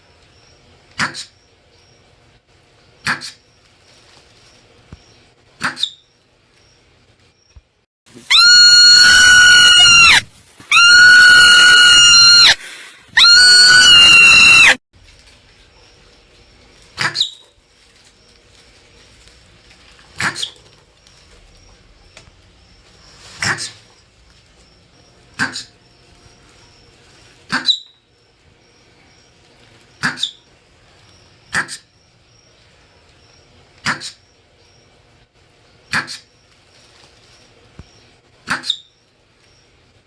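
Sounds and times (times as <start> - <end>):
marmot screaming: 8.2 - 14.8
marmot chirps: 27.5 - 28.0, 30.0 - 30.4.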